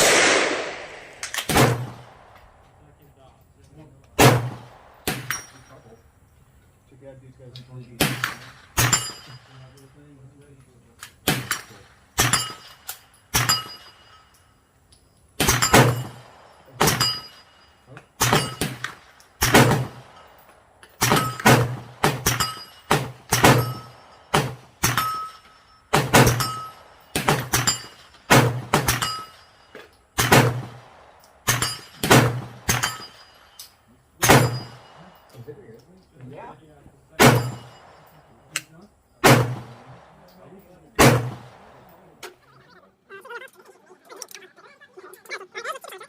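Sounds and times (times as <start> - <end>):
suppressed gun firing single shots: 0.0 - 2.6, 4.1 - 5.5, 8.0 - 9.2, 11.1 - 12.6, 15.4 - 17.2, 18.2 - 20.3, 20.9 - 25.2, 25.9 - 29.2, 30.2 - 33.1, 34.2 - 35.0, 37.2 - 37.9, 39.2 - 40.2, 41.0 - 42.0.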